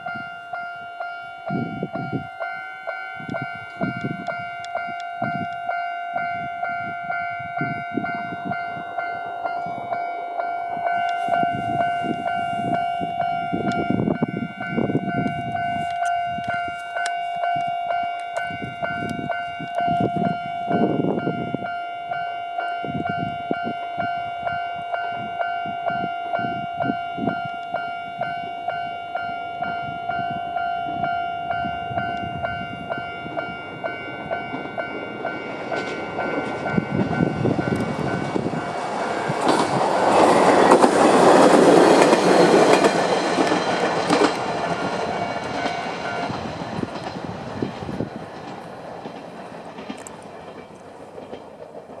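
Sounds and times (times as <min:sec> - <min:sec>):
level crossing alarm ringing: 0:00.0 - 0:49.2
diesel railcar passing: 0:00.0 - 0:52.0
wheels clacking over rail joints: 0:28.7 - 0:52.0.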